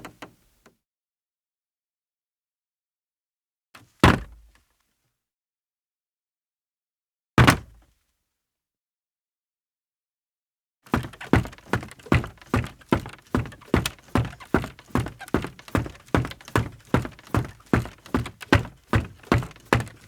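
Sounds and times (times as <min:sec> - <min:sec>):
footsteps on creaky wooden floor: 0:10.9 - 0:20.0.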